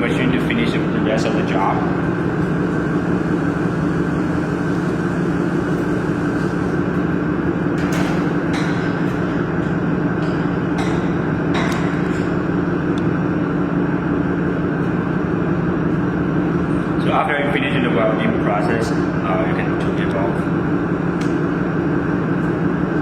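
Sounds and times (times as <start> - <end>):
welding machine humming: 0.0 - 17.4.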